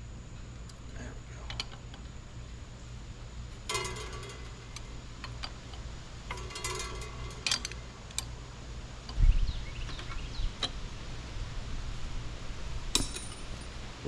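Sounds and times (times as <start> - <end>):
metal clinks: 3.6 - 8.4, 12.9 - 13.8
rapid metal clicks of tools: 3.7 - 8.4.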